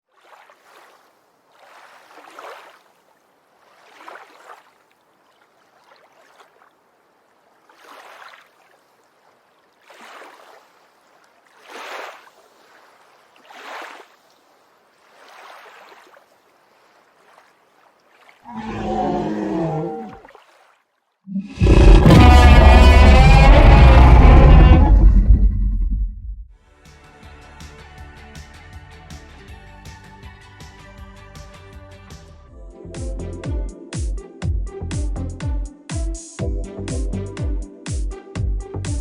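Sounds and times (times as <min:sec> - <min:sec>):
dinosaur roar sound effect: 0:18.5 - 0:20.2, 0:21.3 - 0:26.4.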